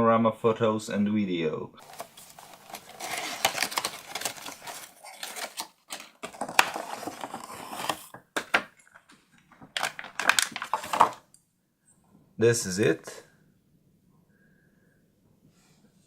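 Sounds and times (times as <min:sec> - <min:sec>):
packaging and plastic parts handled: 0:01.8 - 0:11.4.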